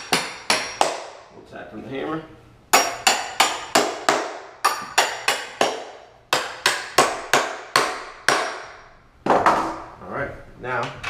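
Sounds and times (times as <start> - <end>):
hammer tapping wood: 2.8 - 8.7.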